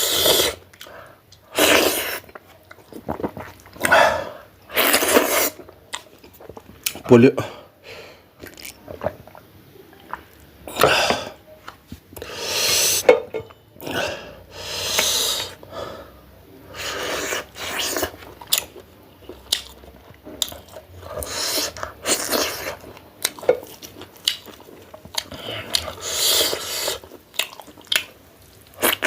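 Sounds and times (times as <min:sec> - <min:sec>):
chewing: 0:00.7 - 0:04.0, 0:17.3 - 0:29.0
person sucking air sharply: 0:12.2 - 0:13.1, 0:14.5 - 0:15.6.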